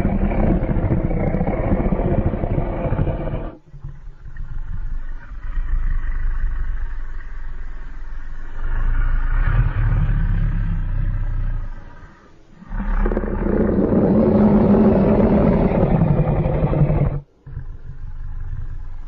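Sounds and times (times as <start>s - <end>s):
deep monster roar: 0.0s - 3.6s, 12.6s - 17.6s
rumbling roar: 0.0s - 7.4s, 8.3s - 19.0s.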